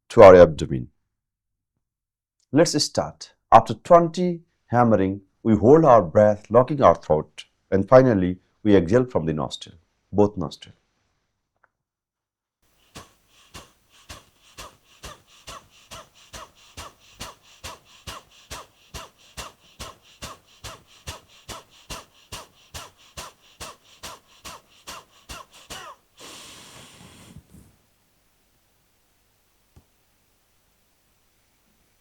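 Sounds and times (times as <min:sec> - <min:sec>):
forceful nasal exhalations: 0:12.7 - 0:27.8
long breath: 0:12.7 - 0:27.8.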